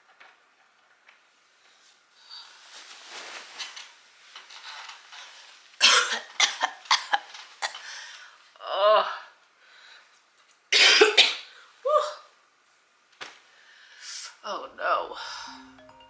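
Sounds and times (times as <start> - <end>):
soft breathy noise: 1.5 - 3.4, 9.6 - 10.3, 13.4 - 14.4
person coughing: 5.8 - 7.8, 10.8 - 11.4.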